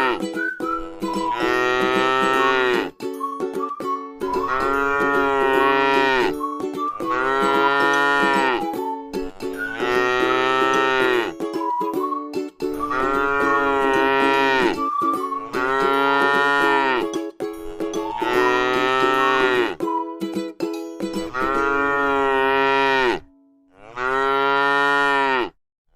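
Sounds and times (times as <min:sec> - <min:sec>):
cow mooing: 0:01.2 - 0:02.9, 0:04.4 - 0:06.3, 0:07.0 - 0:08.6, 0:09.6 - 0:11.3, 0:12.8 - 0:14.8, 0:15.4 - 0:17.0, 0:18.1 - 0:19.8, 0:21.3 - 0:25.6.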